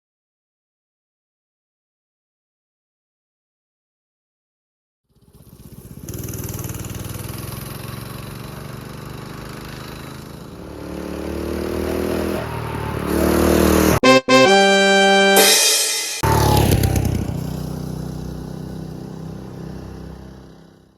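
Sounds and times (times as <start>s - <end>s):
mini bike engine revving: 5.1s - 14.0s, 16.2s - 20.9s
music: 14.0s - 16.2s.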